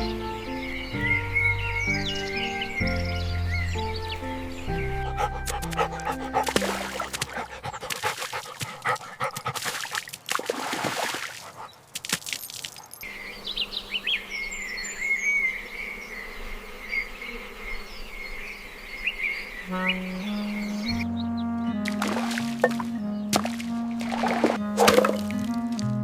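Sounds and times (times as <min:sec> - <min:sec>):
music: 0:00.0 - 0:07.4, 0:19.7 - 0:26.0
insect buzzing with chirps: 0:00.0 - 0:08.0, 0:12.8 - 0:25.8.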